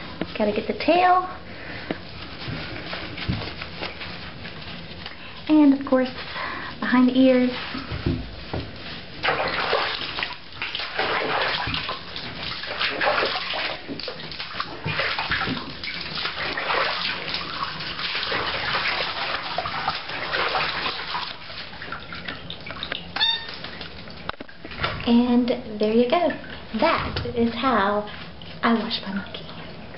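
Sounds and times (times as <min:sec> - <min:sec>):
water splashing in a bathtub: 0:00.0 - 0:29.9
brief high squeak: 0:23.2 - 0:23.6.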